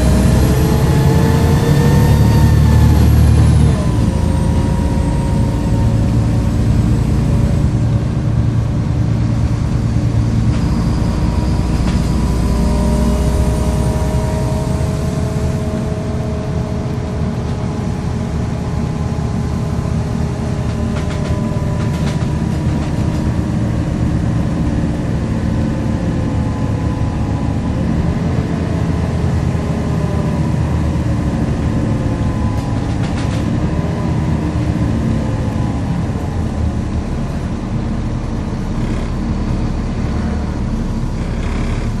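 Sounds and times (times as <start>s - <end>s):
bus diesel engine droning: 0.0s - 42.0s.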